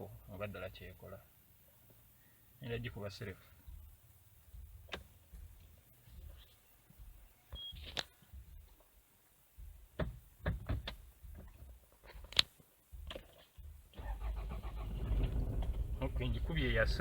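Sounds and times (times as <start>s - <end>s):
car engine cranking: 13.9s - 17.0s.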